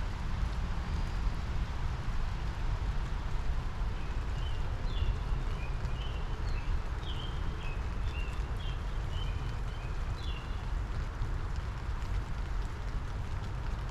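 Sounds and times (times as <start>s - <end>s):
steady rain: 0.0s - 13.9s
songbird chirping: 4.0s - 10.7s.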